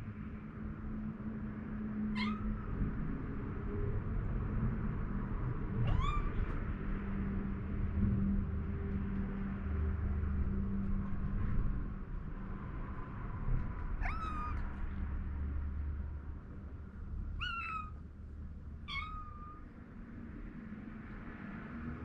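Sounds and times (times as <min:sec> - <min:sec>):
low background rumble: 0:00.0 - 0:22.0
kitten meowing: 0:02.2 - 0:02.6, 0:05.9 - 0:06.6, 0:14.0 - 0:14.8, 0:17.4 - 0:18.0, 0:18.8 - 0:19.7.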